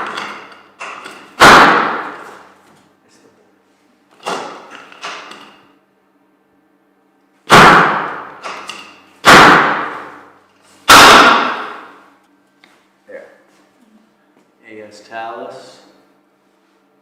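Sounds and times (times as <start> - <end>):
loud sharp thuds: 0.9 - 2.4, 7.5 - 10.2, 10.9 - 12.0.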